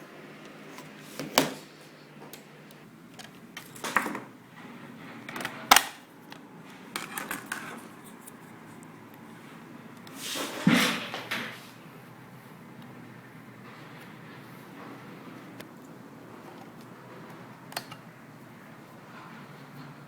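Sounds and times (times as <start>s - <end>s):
plastic clicks of laptop parts: 17.7s - 18.1s.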